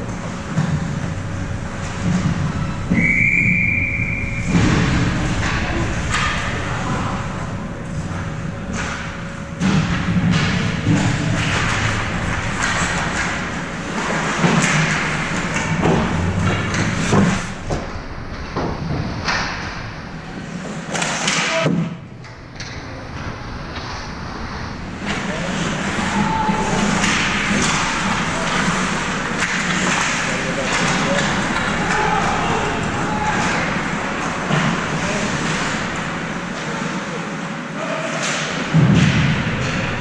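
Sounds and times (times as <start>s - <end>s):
puck slamming against boards: 14.0s - 17.9s, 18.6s - 19.7s, 20.9s - 22.0s, 25.0s - 35.9s, 38.2s - 39.8s
arena crowd noise: 19.3s - 40.0s.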